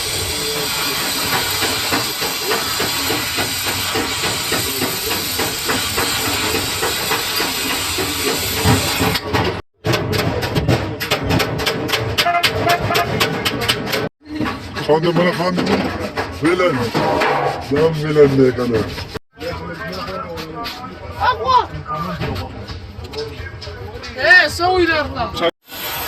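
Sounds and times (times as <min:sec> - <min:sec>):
loud steady air hiss: 0:00.0 - 0:09.2, 0:25.6 - 0:26.0.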